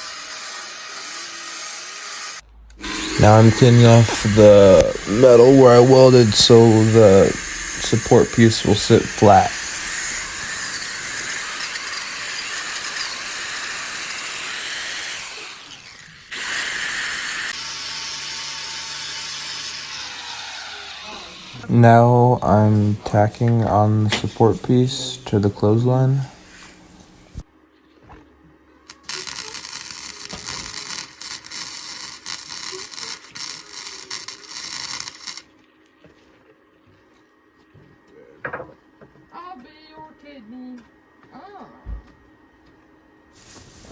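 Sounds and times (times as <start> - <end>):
angle grinder grinding steel: 0.0 - 27.4, 29.0 - 35.4
arc welder crackling: 0.0 - 27.4, 28.9 - 35.5
low motor hum: 2.4 - 11.6.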